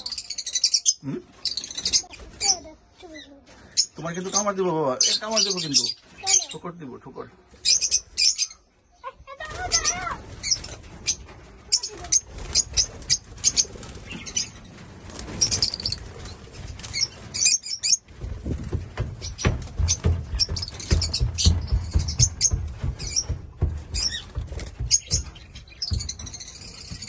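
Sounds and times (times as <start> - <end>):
small bird chirping: 0.0 - 6.8, 15.3 - 18.1, 19.2 - 27.0
wings fluttering: 9.2 - 27.0.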